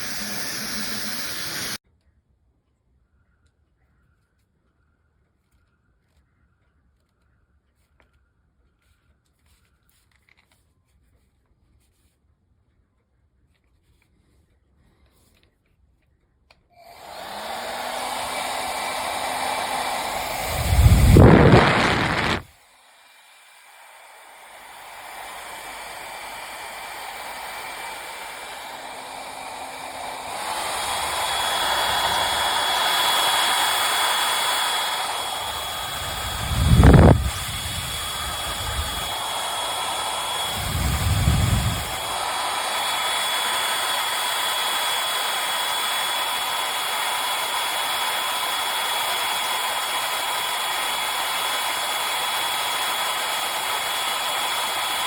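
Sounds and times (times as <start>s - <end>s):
hair dryer blowing with whine: 0.0s - 1.8s, 16.8s - 55.0s.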